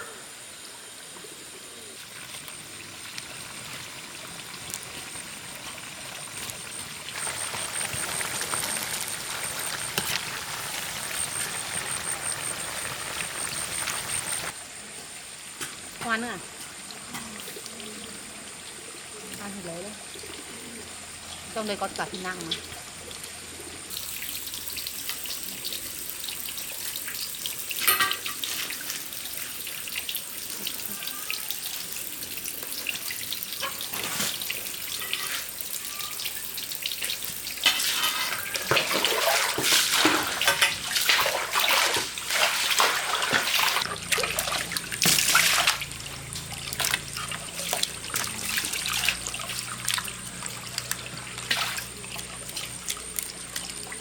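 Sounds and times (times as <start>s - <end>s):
tap water running and splashing: 2.1s - 14.6s, 23.9s - 54.0s.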